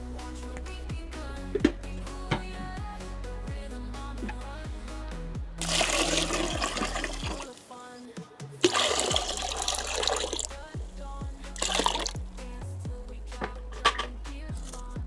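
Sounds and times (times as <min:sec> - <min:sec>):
background music with bass beat: 0:00.0 - 0:15.0
liquid splashing into container: 0:05.6 - 0:07.7, 0:08.6 - 0:10.8, 0:11.6 - 0:12.3.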